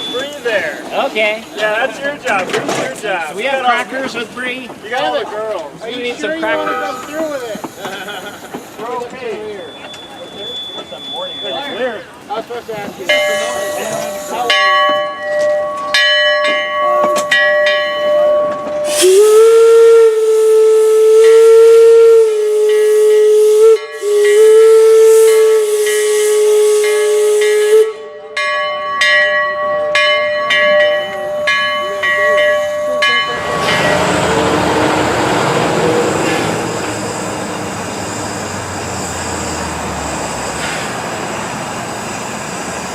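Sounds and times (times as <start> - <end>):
locomotive bell ringing: 0.0 - 2.4, 6.0 - 19.7, 22.5 - 40.6
steam hissing: 6.4 - 14.6, 18.8 - 27.9, 31.0 - 42.9
steam whistle blasts: 18.2 - 28.2.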